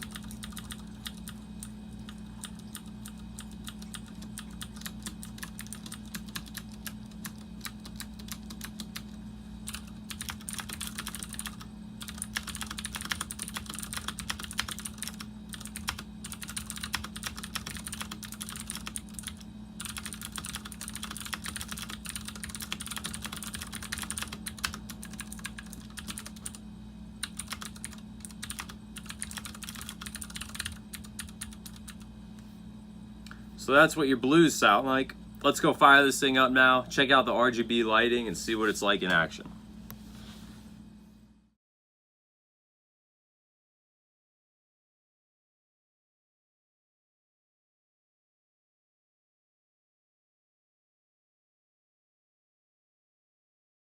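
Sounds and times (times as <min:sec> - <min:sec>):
mechanical keyboard typing: 0:00.0 - 0:09.1, 0:09.7 - 0:26.6, 0:27.2 - 0:32.0
steady low hum: 0:00.0 - 0:41.6.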